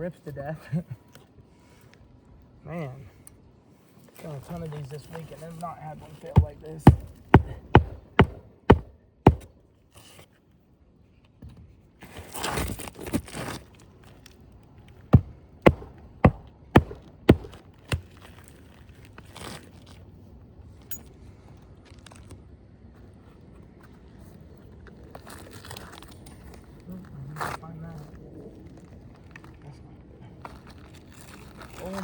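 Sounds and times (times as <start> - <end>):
shingle scraping and tearing: 5.2 - 10.2, 12.1 - 13.8, 15.2 - 19.8
hammer blows on shingle roof: 6.2 - 9.5, 15.2 - 18.2.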